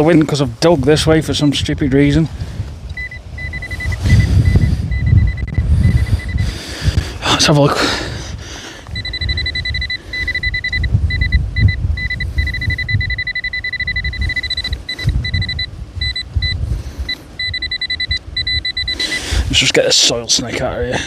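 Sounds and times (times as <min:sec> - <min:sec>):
wind buffeting microphone: 0:00.0 - 0:21.0
metal detector pinpointer tone: 0:02.9 - 0:06.4, 0:08.9 - 0:19.3.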